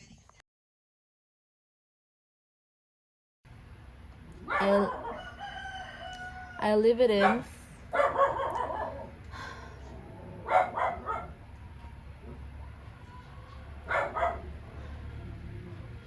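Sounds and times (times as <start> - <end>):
dog barking: 4.4 - 5.6, 7.1 - 9.2, 10.4 - 11.4, 13.8 - 14.8.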